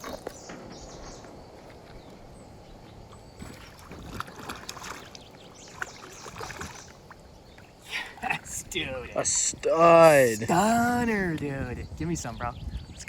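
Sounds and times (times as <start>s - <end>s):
water splashing and sloshing: 0.0s - 10.6s
steady low rumble: 0.3s - 4.2s.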